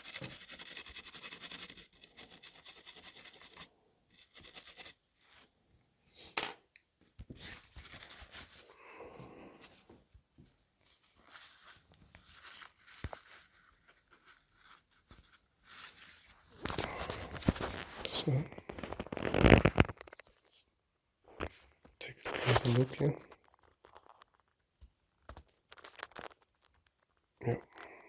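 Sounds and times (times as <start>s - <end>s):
tools scraping and clicking on board: 0.0s - 4.9s
small brush scrubbing circuit board: 0.0s - 5.0s.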